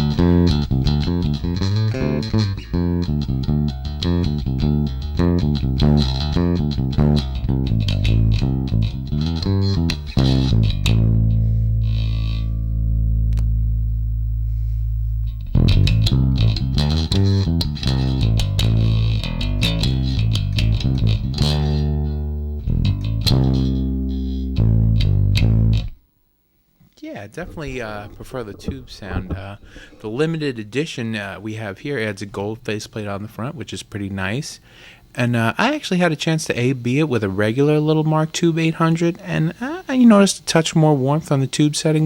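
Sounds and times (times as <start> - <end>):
electric bass plucked notes: 0.0 - 26.0, 27.4 - 30.9.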